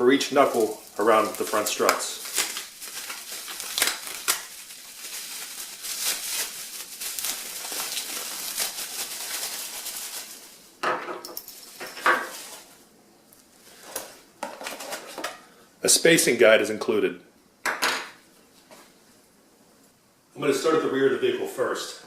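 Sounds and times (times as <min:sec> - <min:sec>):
rustling and crinkling: 0:00.1 - 0:15.4.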